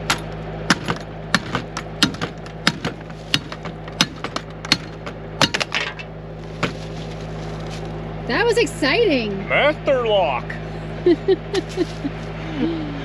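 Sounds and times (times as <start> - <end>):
hard strikes on a padlock: 0.0 - 6.1.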